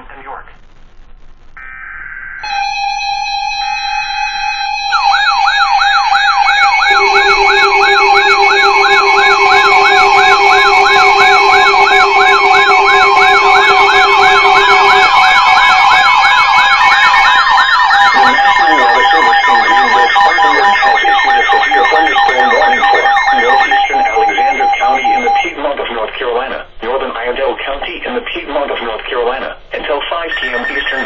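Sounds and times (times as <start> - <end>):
steady alarm tones: 0.8 - 25.8, 30.3 - 31.0
warbling siren sweep: 1.6 - 25.5.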